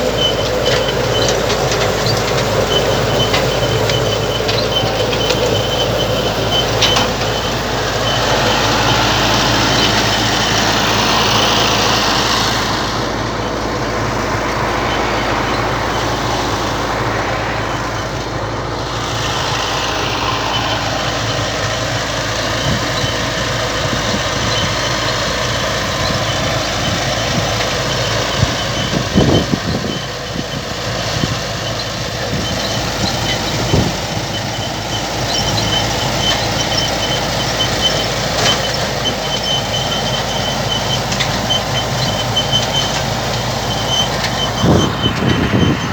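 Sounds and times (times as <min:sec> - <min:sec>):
high repeating squeak: 0:00.0 - 0:12.4, 0:31.8 - 0:45.9
farm machinery running: 0:00.0 - 0:45.9.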